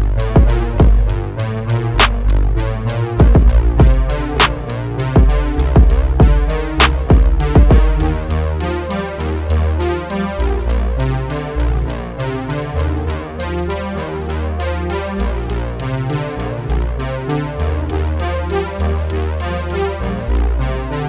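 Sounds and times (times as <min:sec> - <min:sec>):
bass line: 0:00.0 - 0:21.0
synthesizer chords: 0:00.0 - 0:21.0
drum machine beat: 0:00.1 - 0:01.2, 0:02.0 - 0:08.4.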